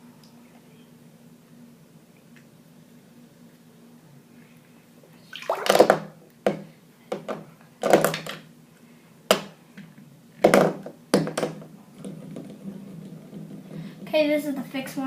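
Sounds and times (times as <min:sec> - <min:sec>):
plastic toys knocking together: 0:05.7 - 0:08.4, 0:10.4 - 0:13.9.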